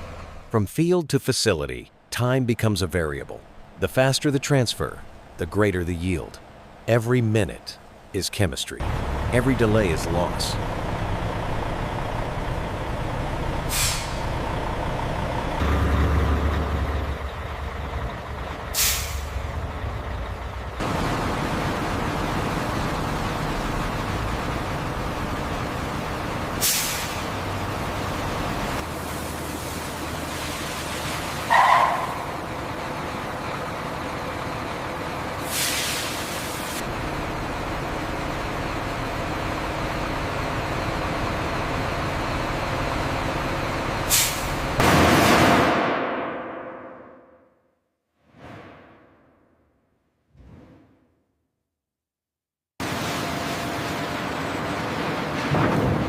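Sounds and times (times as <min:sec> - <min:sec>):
truck engine rumbling: 0:00.0 - 0:46.2, 0:52.8 - 0:56.0
air brake hiss: 0:13.7 - 0:14.3, 0:18.7 - 0:19.4, 0:26.6 - 0:27.3, 0:35.4 - 0:36.8, 0:44.1 - 0:44.6.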